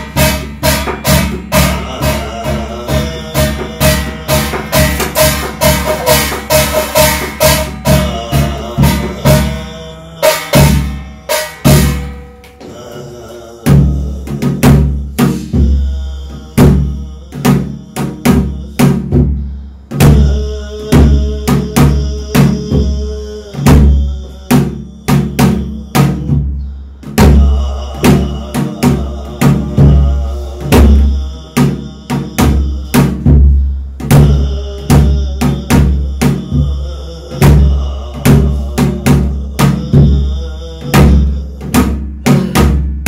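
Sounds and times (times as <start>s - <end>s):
ringing metal percussion: 0.0s - 12.6s
heavy drum strikes: 0.0s - 43.0s.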